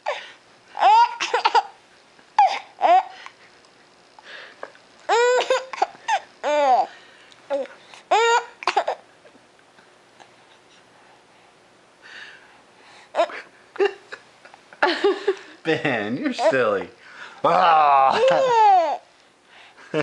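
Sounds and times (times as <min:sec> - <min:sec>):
baby laughing and squealing: 0:00.8 - 0:01.8, 0:05.1 - 0:06.9, 0:08.1 - 0:09.0, 0:18.1 - 0:19.1.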